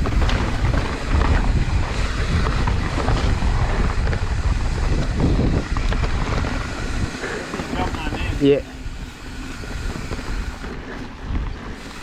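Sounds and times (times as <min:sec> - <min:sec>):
bike clicks and knocks: 0:00.0 - 0:08.6
tyres rumbling on dirt: 0:00.0 - 0:12.0
wind buffeting microphone: 0:00.0 - 0:12.0.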